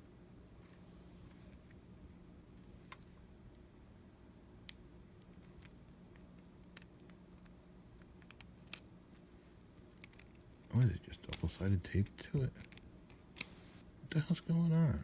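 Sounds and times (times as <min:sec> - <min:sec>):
low steady hum: 0:00.0 - 0:15.0
small clicks and taps of tools: 0:09.8 - 0:13.6.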